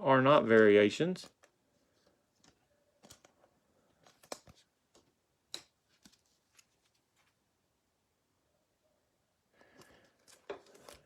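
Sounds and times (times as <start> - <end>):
trading cards clicking and rustling: 2.4 - 7.4.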